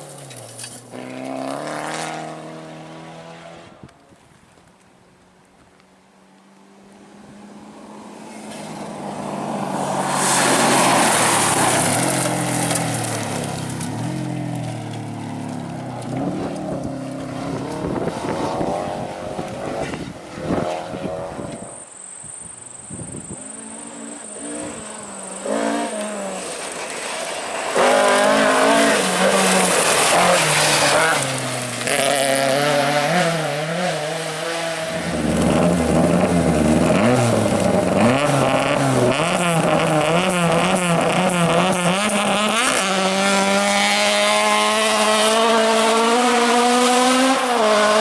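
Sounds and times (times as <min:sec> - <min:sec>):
rally car engine revving: 0:00.0 - 0:03.8, 0:07.7 - 0:21.8, 0:23.3 - 0:48.0.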